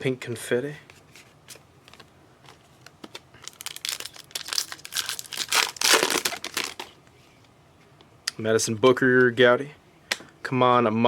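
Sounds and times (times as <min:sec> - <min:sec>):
foil wrapper crinkling and tearing: 0:02.8 - 0:06.9.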